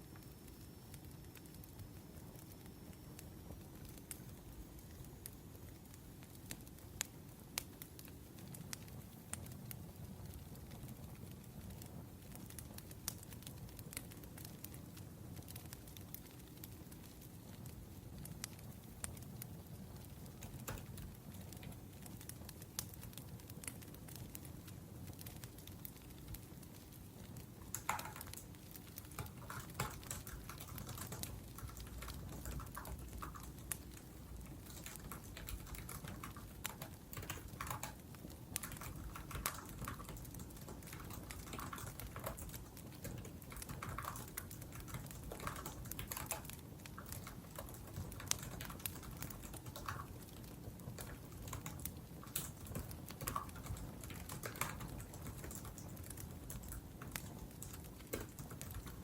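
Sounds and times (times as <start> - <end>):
wood fire burning: 0.0 - 59.0
typing on laptop keyboard: 20.0 - 21.7, 25.1 - 59.0.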